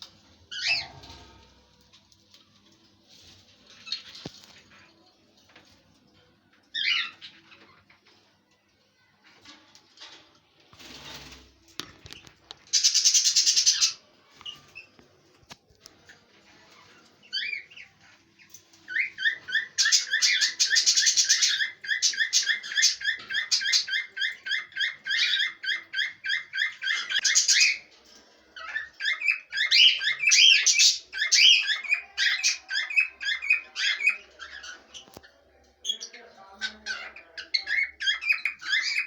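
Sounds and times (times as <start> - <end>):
parrots chirping: 0.5 - 1.3, 12.1 - 15.0, 16.6 - 27.9, 28.6 - 35.4, 36.6 - 39.0.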